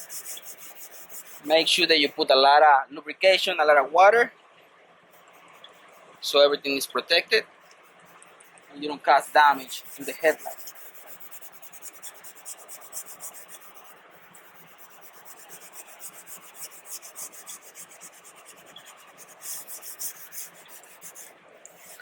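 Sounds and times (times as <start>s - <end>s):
wet sandpaper rubbing on plastic: 0.0s - 2.1s, 7.8s - 22.0s.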